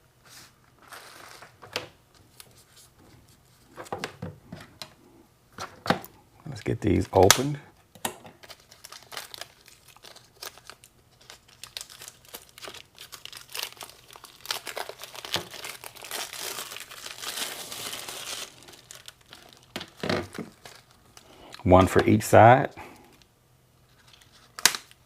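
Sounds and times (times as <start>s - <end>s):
packaging crinkling: 0.8s - 1.7s, 8.4s - 22.1s, 23.1s - 25.0s.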